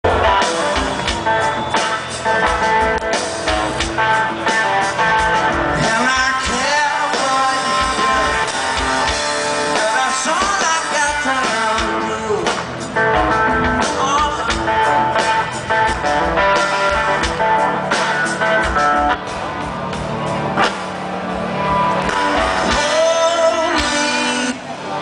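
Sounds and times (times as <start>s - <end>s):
distorted electric guitar riffing: 0.0s - 25.0s
drums: 0.0s - 25.0s
person singing: 5.7s - 9.0s, 9.6s - 12.7s, 13.8s - 14.9s, 22.6s - 25.0s.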